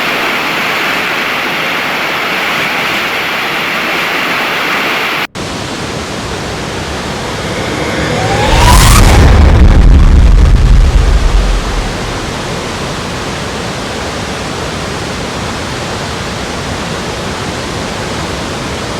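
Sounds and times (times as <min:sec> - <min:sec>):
loud deep rumble: 0:05.6 - 0:13.5.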